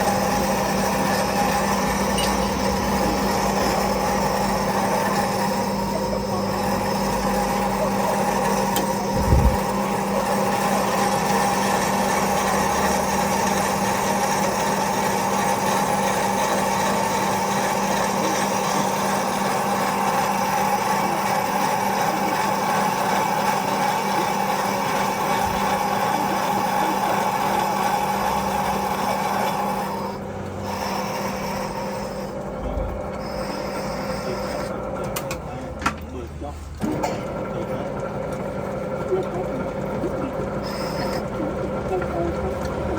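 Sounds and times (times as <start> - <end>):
metal lathe humming: 0.0 - 35.8, 36.8 - 42.9.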